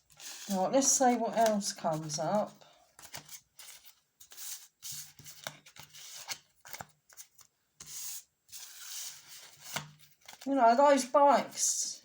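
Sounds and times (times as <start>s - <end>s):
cards being shuffled: 0.1s - 2.1s, 3.0s - 10.5s.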